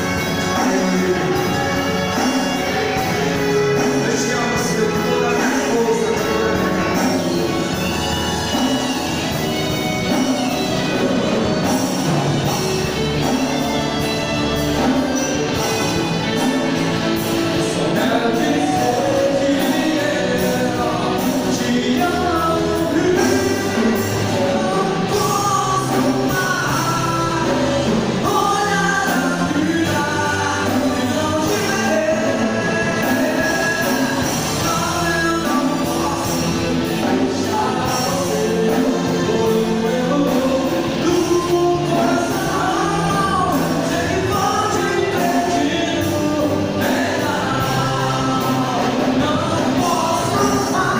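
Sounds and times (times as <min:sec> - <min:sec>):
person singing: 0:00.0 - 0:50.9
rock band playing: 0:00.0 - 0:50.9.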